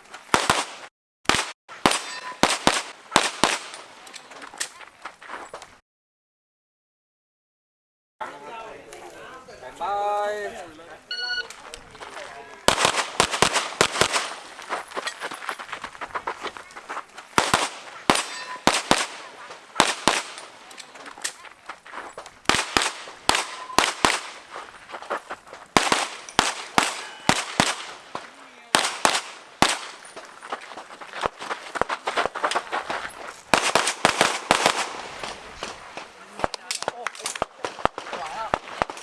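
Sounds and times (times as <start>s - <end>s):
pistol shots: 0.3s - 4.0s, 12.7s - 14.8s, 17.3s - 21.4s, 22.4s - 24.9s, 25.7s - 30.3s, 33.5s - 39.0s.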